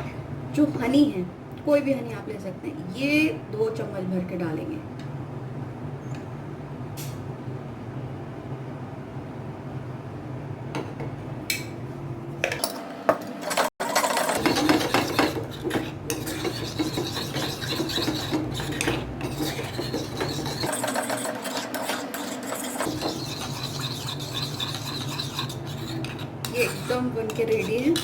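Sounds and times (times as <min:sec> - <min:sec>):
spoon scraping metal pan: 0:14.0 - 0:28.0.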